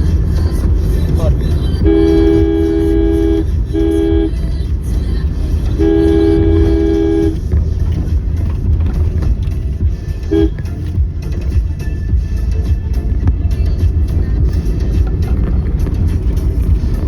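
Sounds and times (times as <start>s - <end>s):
engine and traffic rumble: 0.0s - 17.0s
vehicle horn blasts: 1.8s - 4.5s, 5.6s - 7.5s, 10.2s - 10.9s.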